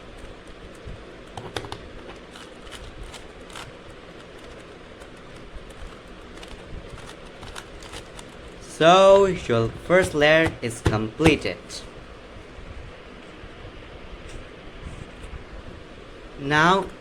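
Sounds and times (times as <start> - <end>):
steady low background noise: 0.0 - 17.0
plastic puzzle cube clicking: 0.2 - 8.6.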